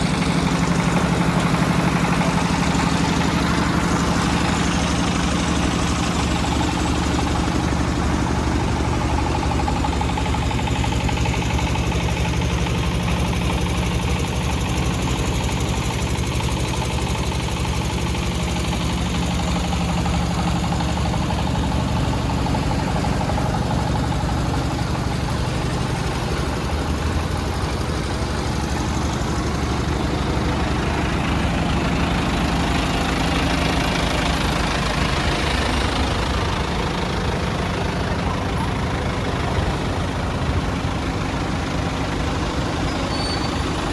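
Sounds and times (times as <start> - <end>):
truck engine idling: 0.0 - 43.9.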